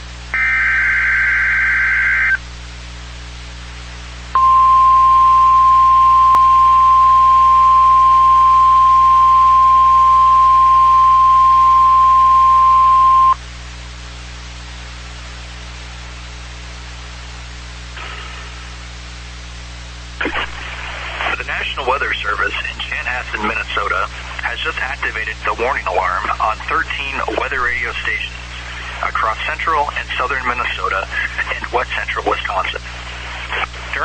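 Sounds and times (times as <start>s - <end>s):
broadcast hum and hiss: 0.0s - 34.0s
steady warning alarm tone: 0.4s - 2.4s, 4.4s - 13.4s.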